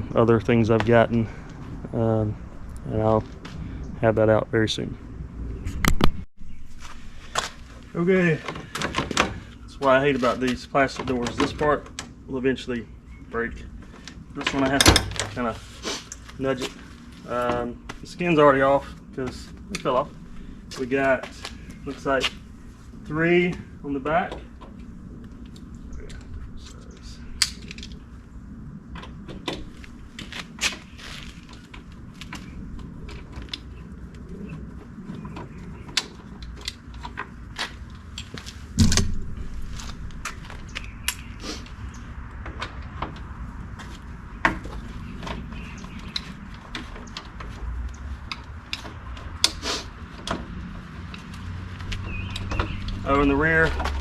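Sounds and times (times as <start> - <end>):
low steady hum: 0.0 - 54.0
short scrape: 49.6 - 49.9.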